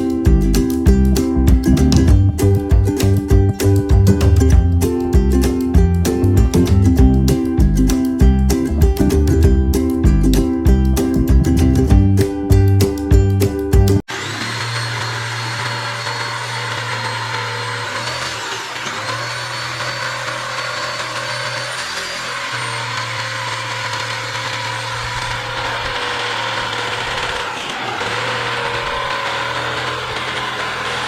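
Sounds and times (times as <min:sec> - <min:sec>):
reciprocating saw running: 0:00.0 - 0:09.5, 0:10.1 - 0:31.0
background music: 0:00.0 - 0:14.0.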